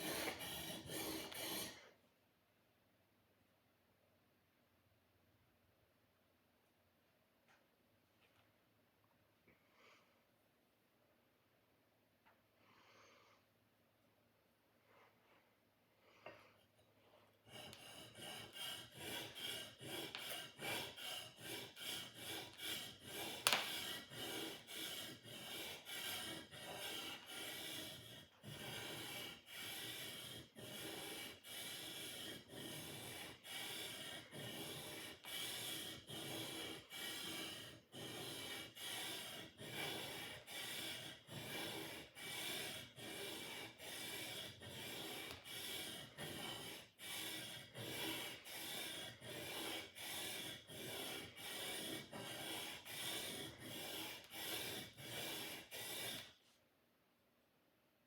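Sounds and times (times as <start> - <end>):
blade rasping on sharpener: 0.0 - 1.9, 17.4 - 56.4.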